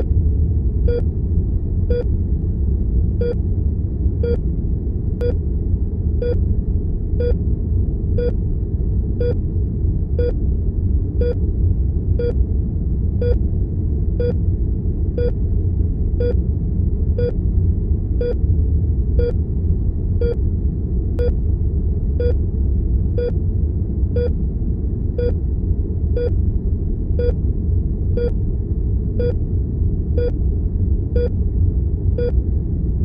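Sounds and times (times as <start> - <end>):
low room tone rumble: 0.0 - 33.0
heart monitor beeping: 18.2 - 18.4, 24.2 - 24.4, 28.2 - 28.4.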